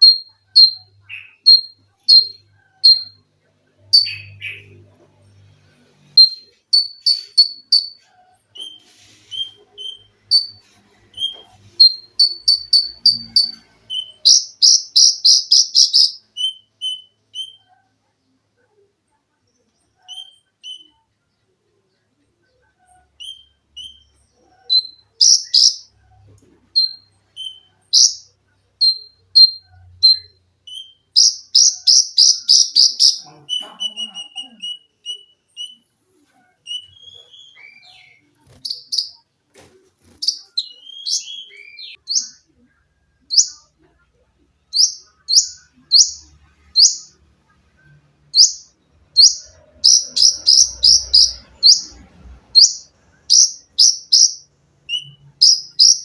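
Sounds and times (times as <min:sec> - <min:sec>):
songbird chirping: 0:00.0 - 0:56.0
rapid repeated bird notes: 0:06.2 - 0:17.8, 0:24.8 - 0:25.9, 0:26.8 - 0:35.8, 0:48.2 - 0:52.0, 0:52.6 - 0:56.0.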